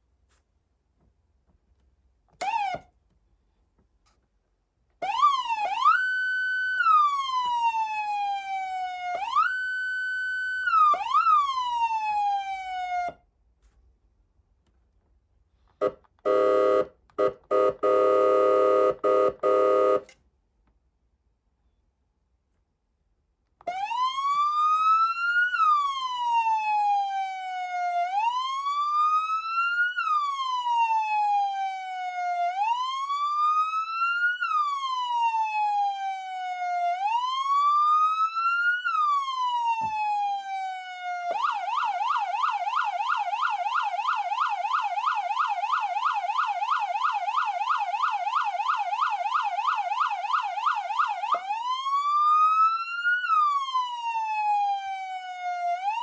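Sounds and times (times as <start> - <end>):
electronic siren wail and yelp: 2.4 - 2.9, 5.0 - 13.2, 23.7 - 56.0.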